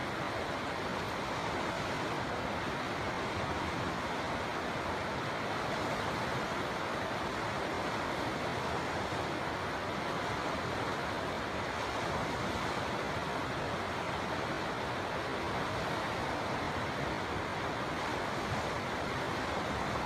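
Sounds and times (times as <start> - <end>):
river water flowing: 0.0 - 20.0.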